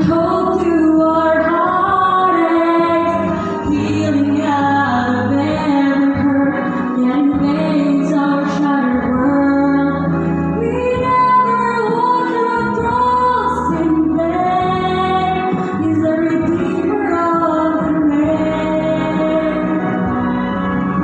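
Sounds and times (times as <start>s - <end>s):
backing music: 0.0s - 21.0s
woman singing a ballad: 0.0s - 21.0s.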